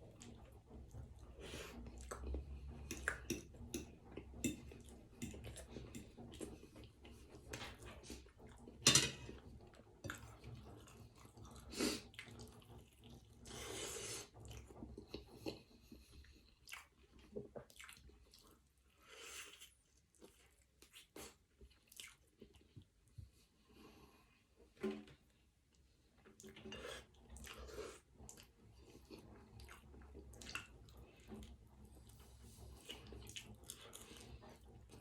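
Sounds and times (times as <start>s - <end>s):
person chewing wetly: 1.6s - 7.3s, 10.0s - 22.9s, 26.4s - 35.0s.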